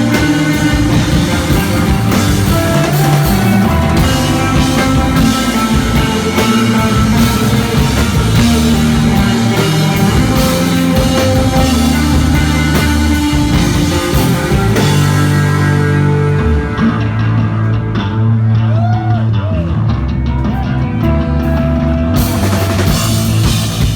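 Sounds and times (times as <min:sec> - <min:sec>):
drums and cymbals: 0:00.0 - 0:17.3, 0:22.2 - 0:23.9
bass guitar: 0:00.0 - 0:23.9
electric guitar: 0:00.0 - 0:23.9.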